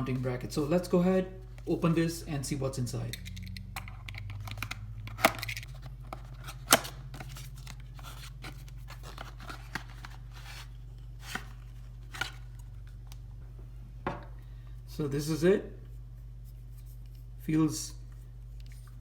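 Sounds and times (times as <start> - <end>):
steady low hum: 0.0 - 19.0
packaging rustling and snapping: 3.2 - 12.7.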